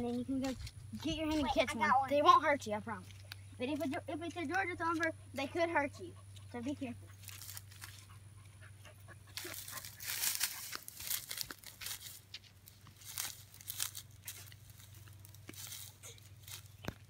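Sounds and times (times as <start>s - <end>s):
dry grass rustling and crackling: 7.2s - 8.1s, 9.3s - 17.0s.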